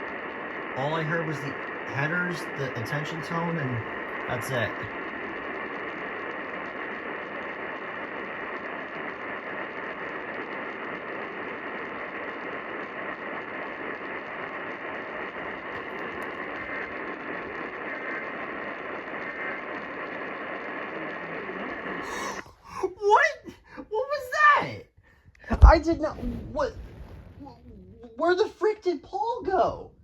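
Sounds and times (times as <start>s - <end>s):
radio static hiss: 0.0s - 24.8s, 25.4s - 29.7s.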